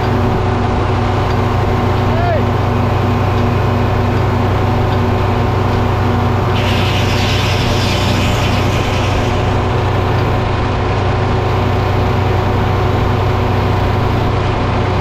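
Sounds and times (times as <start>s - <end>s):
sawmill engine running: 0.0s - 14.7s
hissing noise: 6.5s - 10.7s.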